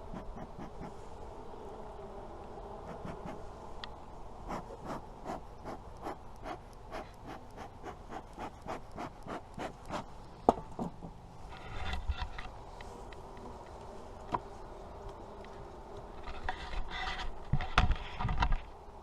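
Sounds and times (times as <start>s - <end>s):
honeybees humming: 0.0s - 10.5s, 11.3s - 17.6s
short scratching strokes: 2.8s - 3.4s, 4.5s - 10.1s.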